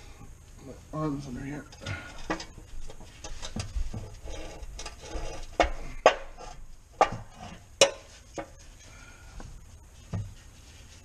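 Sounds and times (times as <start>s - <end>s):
light metal scraping: 1.3s - 9.1s.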